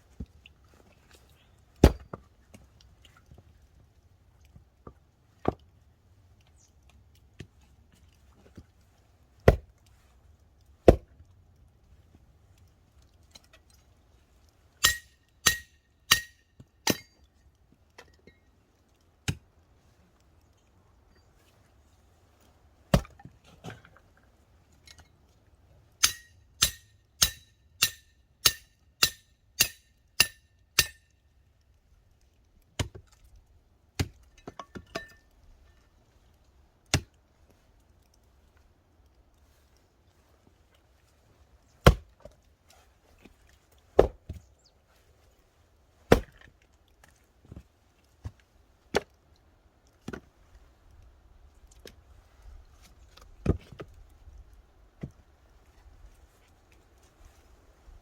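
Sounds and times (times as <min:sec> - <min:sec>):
axe chopping firewood: 0:01.8 - 0:02.2, 0:09.4 - 0:09.7, 0:10.8 - 0:11.2, 0:14.8 - 0:17.2, 0:22.9 - 0:23.3, 0:26.0 - 0:31.0, 0:32.8 - 0:33.1, 0:34.0 - 0:35.2, 0:36.9 - 0:37.1, 0:41.8 - 0:42.3, 0:44.0 - 0:44.4, 0:46.1 - 0:46.5.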